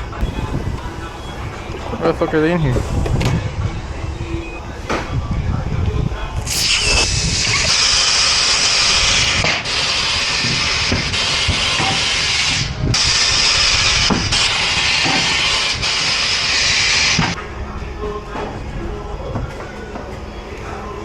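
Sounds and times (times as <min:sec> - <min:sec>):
compressed air hissing: 0:06.4 - 0:17.4.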